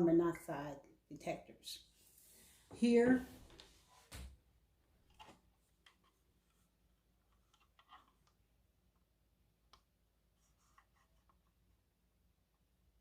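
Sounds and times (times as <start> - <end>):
faint clicks of handling plastic: 5.0 - 9.1.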